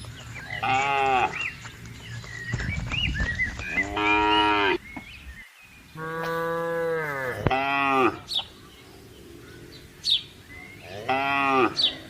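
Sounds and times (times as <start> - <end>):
cattle mooing: 10.8 - 12.0.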